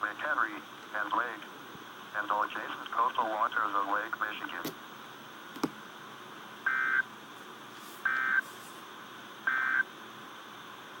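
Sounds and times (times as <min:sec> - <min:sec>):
radio hiss: 0:00.0 - 0:05.0, 0:07.7 - 0:08.9.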